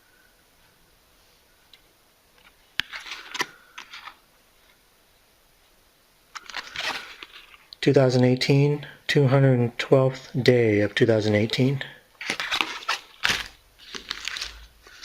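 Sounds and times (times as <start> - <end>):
plastic packet crinkling: 6.4 - 7.6, 12.2 - 15.0.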